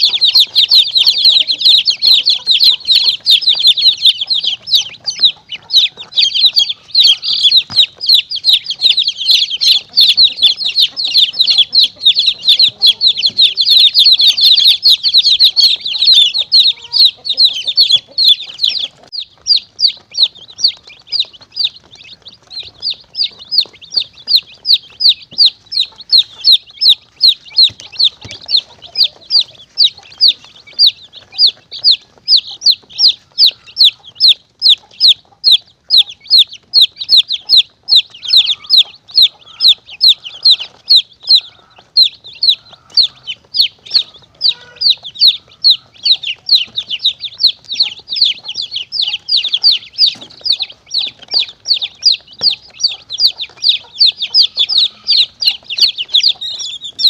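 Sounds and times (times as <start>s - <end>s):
baby chicks peeping: 0.0s - 57.0s.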